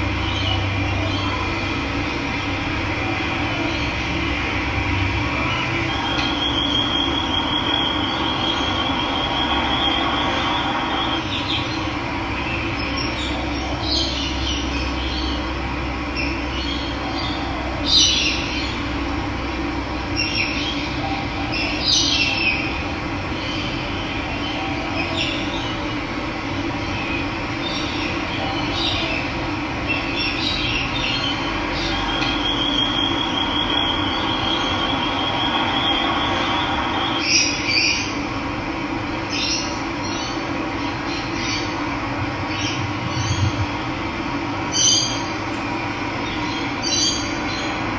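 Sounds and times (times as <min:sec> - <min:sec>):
birds trilling and chirping: 0:44.7 - 0:47.6.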